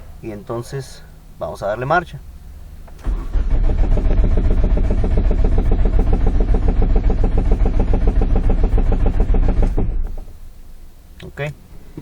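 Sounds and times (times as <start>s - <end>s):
car engine cranking: 2.4s - 12.0s.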